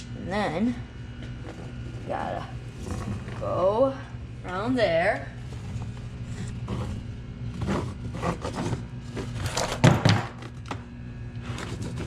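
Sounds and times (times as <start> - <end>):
tyre scraping against rim: 5.5 - 9.9.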